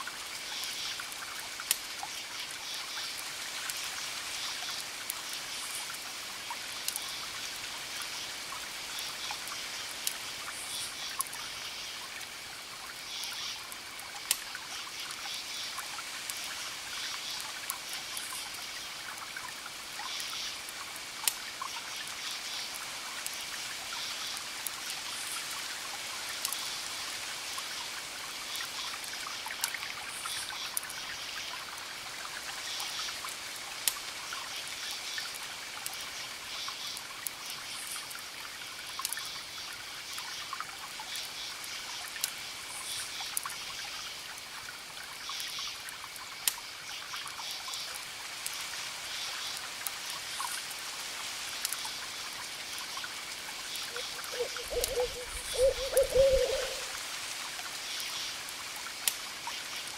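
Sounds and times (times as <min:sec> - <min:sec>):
wood fire crackling and popping: 0:59.0 - 0:59.2.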